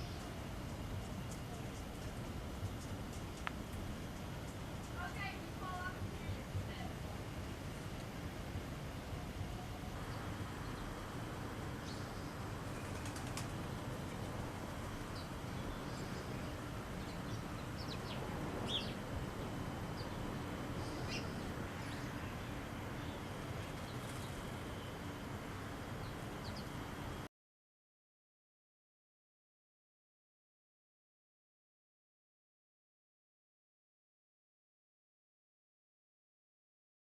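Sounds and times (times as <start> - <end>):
outdoor background hiss: 0.0 - 27.3.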